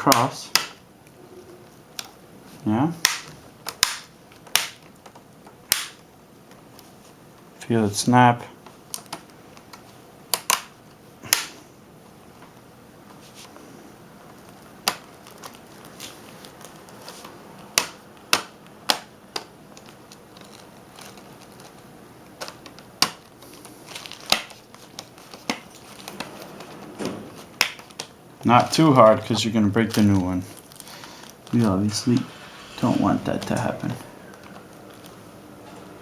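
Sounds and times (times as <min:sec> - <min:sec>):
plastic clips snapping into place: 0:03.0 - 0:06.0, 0:08.9 - 0:11.6.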